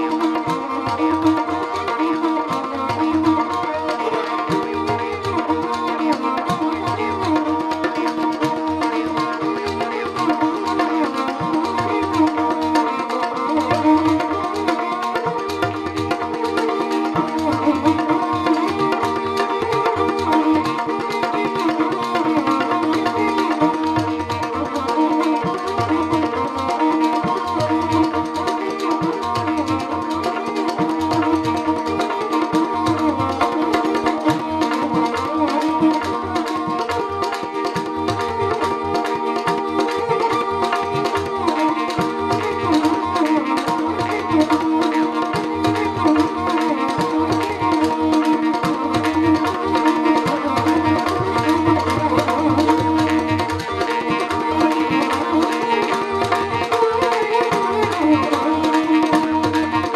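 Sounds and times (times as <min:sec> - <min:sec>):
hand drum rhythm: 0:01.3 - 0:59.9
bowed folk lute melody: 0:03.1 - 0:04.8.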